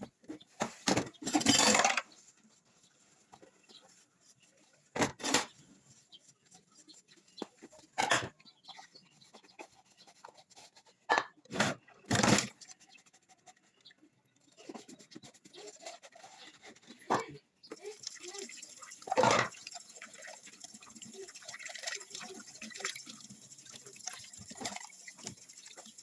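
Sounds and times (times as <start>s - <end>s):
dishes and pans clattering: 0.7s - 2.2s, 8.0s - 8.4s, 19.0s - 19.6s.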